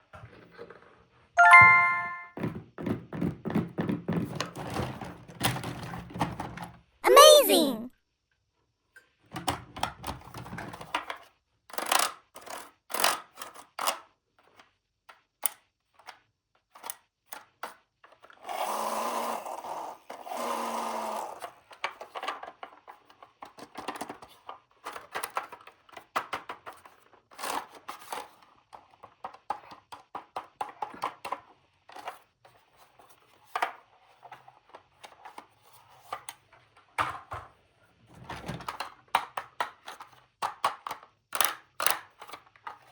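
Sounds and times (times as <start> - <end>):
plastic toy pieces clicking: 39.1 - 42.4.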